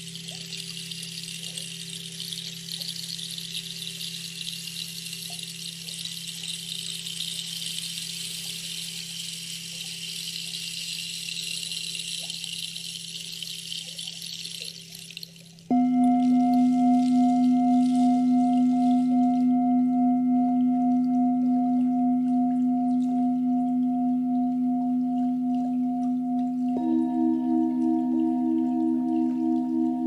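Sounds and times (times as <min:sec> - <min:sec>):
low steady hum: 0:11.4 - 0:30.0.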